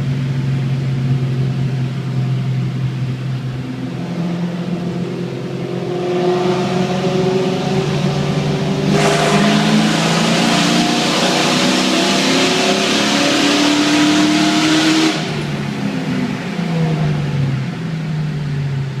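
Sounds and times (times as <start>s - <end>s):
car exhaust revving: 0.0s - 19.0s.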